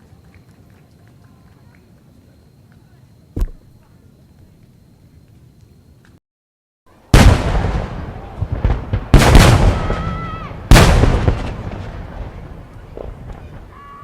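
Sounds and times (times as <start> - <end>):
firework booms: 7.1 - 13.8
firework crackles: 7.1 - 14.0.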